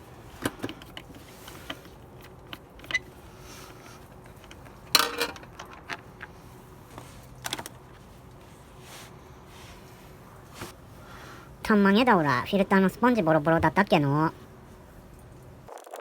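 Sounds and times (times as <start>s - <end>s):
metal parts and tools clinking: 4.4s - 6.0s.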